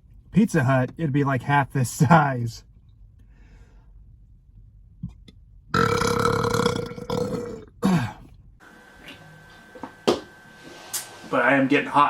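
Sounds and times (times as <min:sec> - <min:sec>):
man burping: 0:05.7 - 0:08.3.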